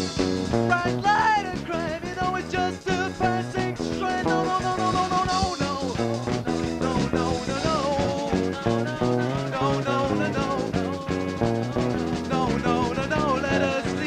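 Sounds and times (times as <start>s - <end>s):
live rock band playing: 0.0s - 14.0s.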